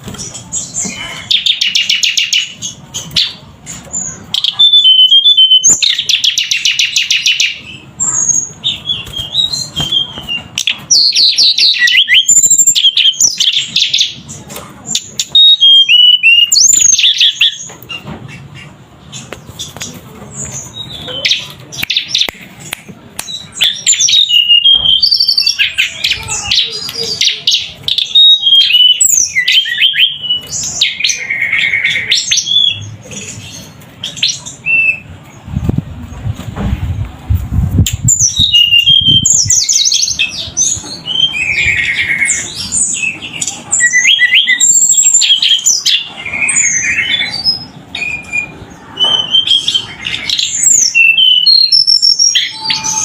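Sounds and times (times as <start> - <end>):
bird singing whistled trills: 4.4 - 14.2, 15.0 - 17.7, 38.0 - 53.0.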